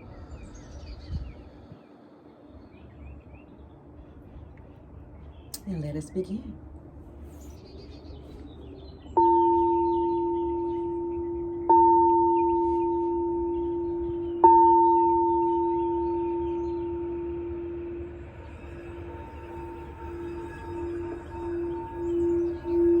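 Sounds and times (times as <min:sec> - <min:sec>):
singing bowl ringing: 0:09.1 - 0:23.0.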